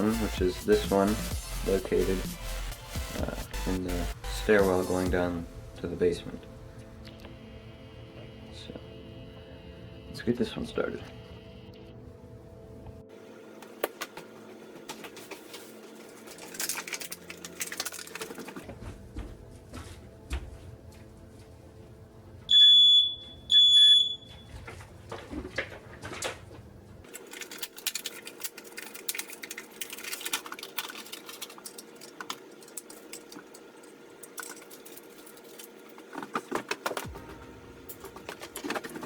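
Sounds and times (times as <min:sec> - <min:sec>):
smoke alarm beeps: 0:22.5 - 0:24.5.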